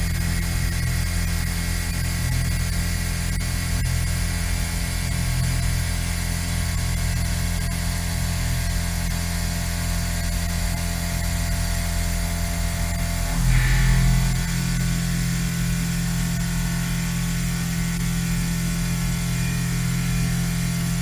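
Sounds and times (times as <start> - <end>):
milling machine hum: 10.4 - 21.0.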